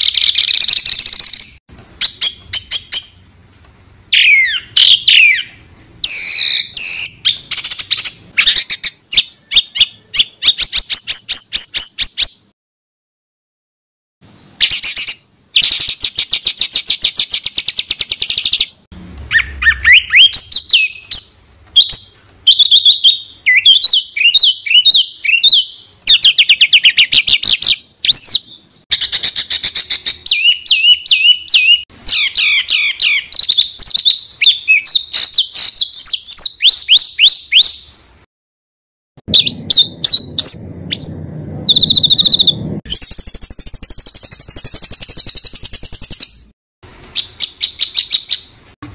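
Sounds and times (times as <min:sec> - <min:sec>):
songbird trilling: 0:04.1 - 0:12.3, 0:19.3 - 0:37.9, 0:39.3 - 0:46.4.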